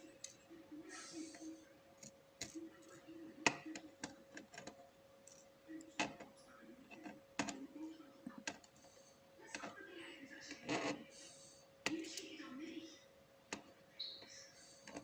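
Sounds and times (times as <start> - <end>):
soft handling noise: 0.0 - 11.2
faint steady hum: 0.0 - 15.0.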